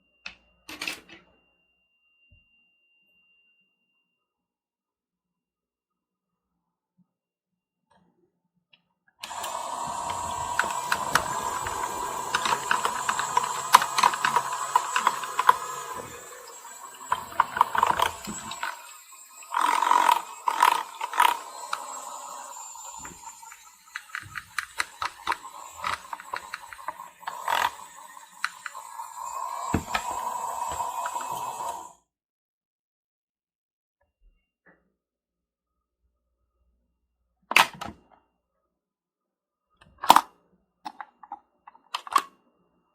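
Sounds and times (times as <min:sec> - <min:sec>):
toy washing machine motor whining: 0:09.2 - 0:32.0.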